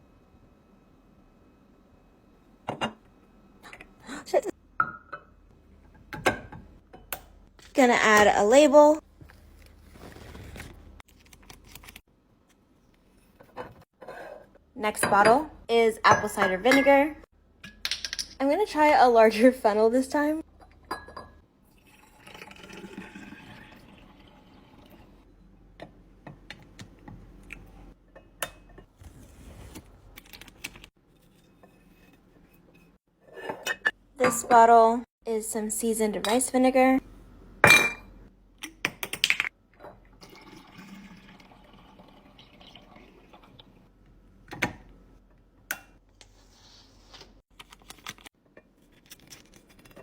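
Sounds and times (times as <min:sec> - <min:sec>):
liquid pouring into glass jar: 0:21.7 - 0:24.4, 0:40.2 - 0:43.6.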